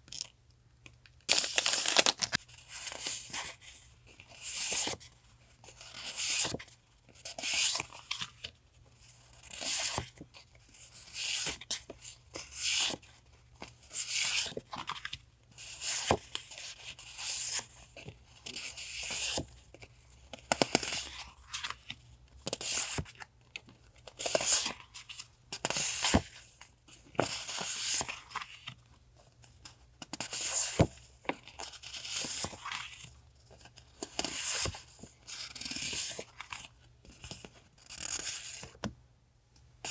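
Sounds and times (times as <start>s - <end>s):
paper tearing and crinkling: 1.3s - 2.4s.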